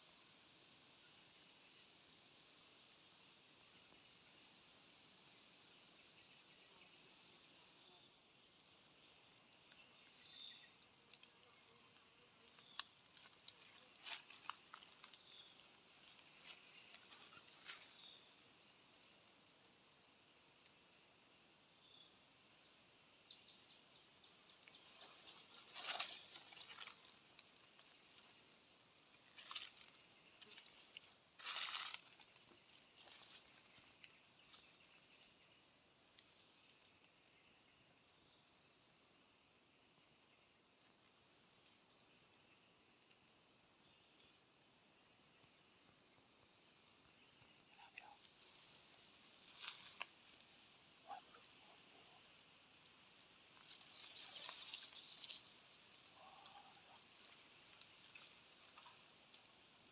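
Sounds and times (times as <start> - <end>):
insect chirping: 0.0 - 59.9
rustling crunches: 12.6 - 15.5, 25.2 - 27.2, 29.3 - 32.5.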